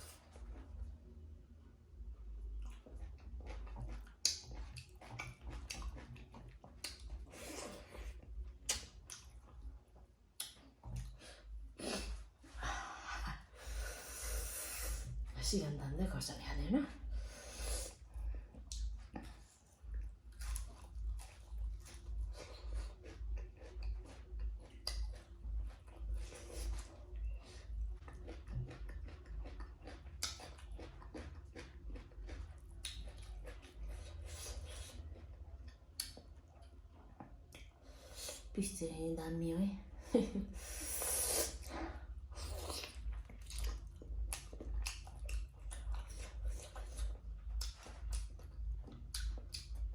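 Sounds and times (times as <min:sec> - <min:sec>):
person chewing noisily: 0:00.0 - 0:01.1, 0:02.2 - 0:15.4, 0:17.0 - 0:38.5, 0:40.6 - 0:49.9
mouth smacks: 0:08.6 - 0:09.3.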